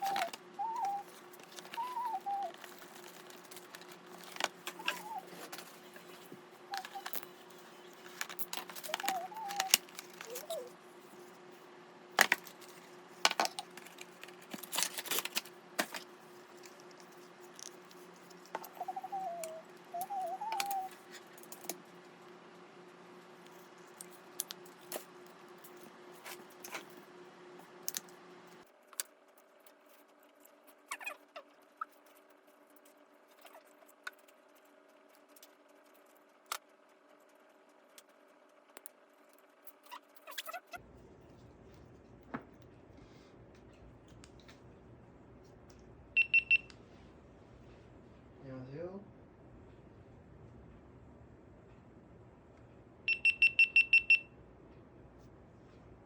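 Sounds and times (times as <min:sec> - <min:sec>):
wavering chirps: 0:00.0 - 0:02.9, 0:04.7 - 0:05.5, 0:06.7 - 0:07.9, 0:08.8 - 0:10.8, 0:18.6 - 0:21.0
background hum: 0:00.0 - 0:56.0.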